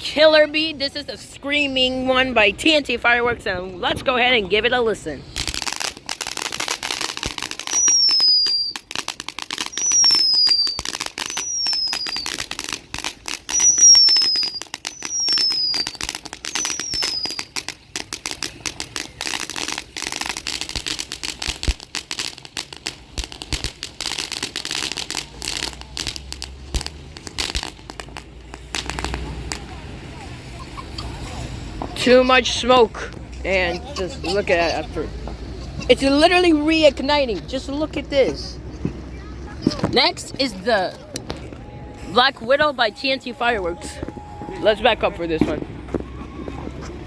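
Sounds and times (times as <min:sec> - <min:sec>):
firework crackling: 0:04.2 - 0:47.0
firework whistles falling in pitch: 0:07.2 - 0:09.0, 0:09.6 - 0:12.6, 0:13.3 - 0:17.7.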